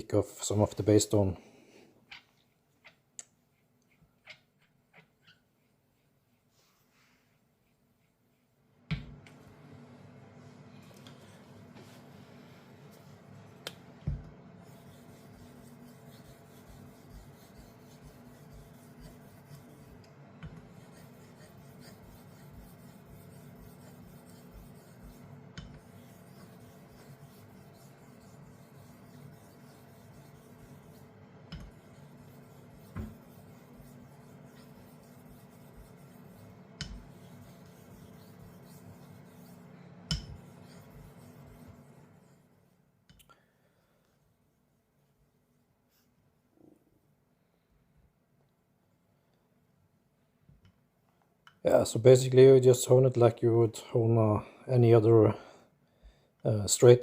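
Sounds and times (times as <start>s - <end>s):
razor blade rubbing on whetstone: 14.6s - 20.0s, 20.6s - 42.3s.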